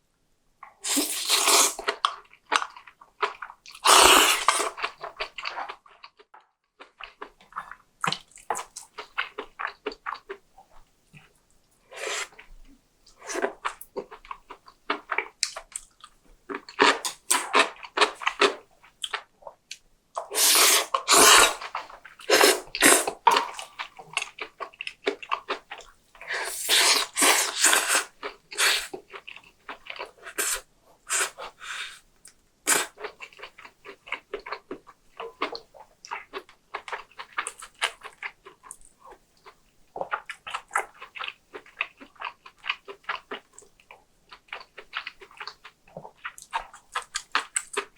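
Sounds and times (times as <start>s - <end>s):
loud slurps: 0.8s - 1.8s, 3.8s - 4.7s, 11.9s - 12.4s, 20.3s - 23.2s, 26.3s - 28.9s, 30.2s - 32.0s
person chewing with wet clicks: 1.8s - 11.6s, 13.1s - 31.6s, 32.2s - 47.9s.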